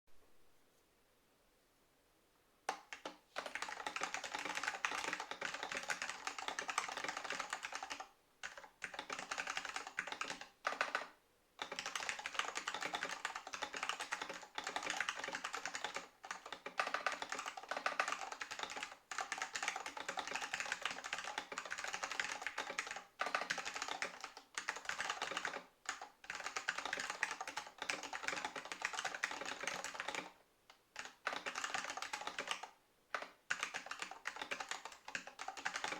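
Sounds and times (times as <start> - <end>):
fast typing on mechanical keyboard: 2.7 - 30.4, 31.0 - 35.9.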